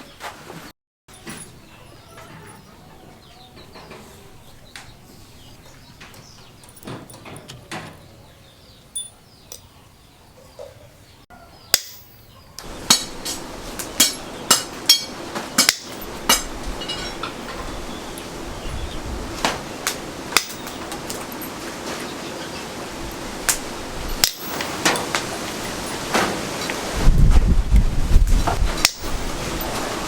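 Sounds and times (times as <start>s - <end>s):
metal striking metal: 11.7s - 17.7s, 20.3s - 21.4s, 24.2s - 26.4s, 28.8s - 29.8s.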